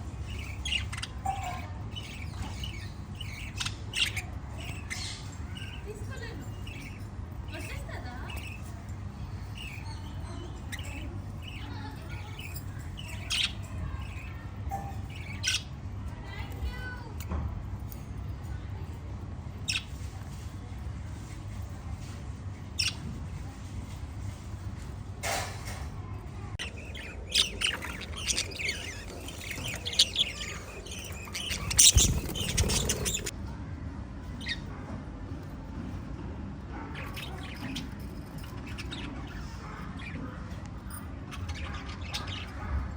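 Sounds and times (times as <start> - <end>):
parrots chirping: 0.0 - 17.0, 26.6 - 33.3, 36.9 - 42.9.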